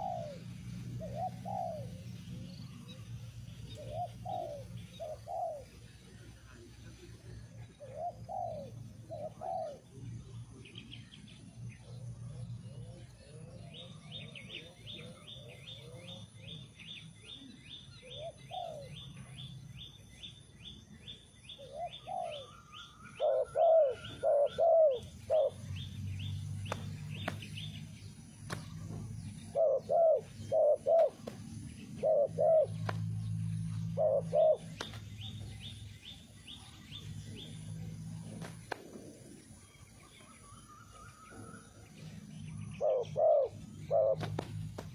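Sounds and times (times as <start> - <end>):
doves cooing: 0.0 - 6.3, 7.0 - 10.6, 18.0 - 19.4, 21.6 - 25.9, 28.7 - 35.7, 37.1 - 44.9.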